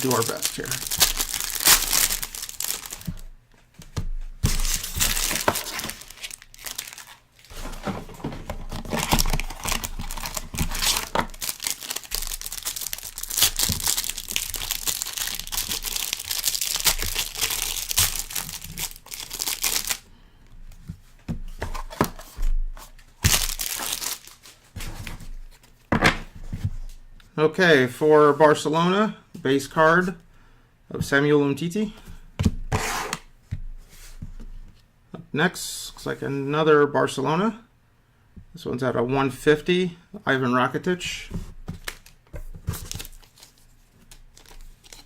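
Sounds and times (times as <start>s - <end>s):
plastic wrapping crinkling: 0.0s - 3.3s, 4.4s - 7.8s, 8.6s - 20.0s, 23.2s - 24.6s, 41.8s - 45.0s.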